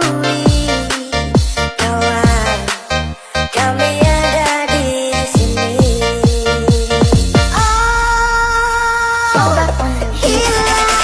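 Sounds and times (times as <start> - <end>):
deep kick drum hits: 2.2 - 2.5, 5.4 - 9.7.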